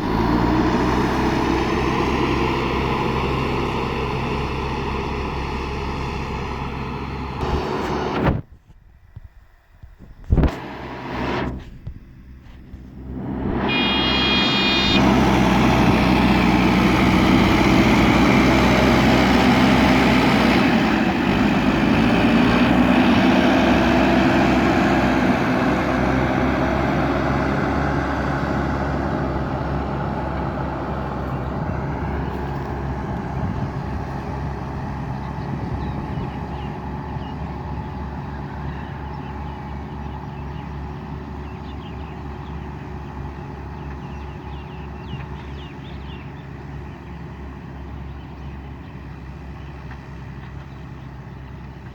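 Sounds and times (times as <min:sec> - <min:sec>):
heavy diesel engine under load: 0:00.0 - 0:51.9
brief high-pitched tone: 0:13.0 - 0:15.6.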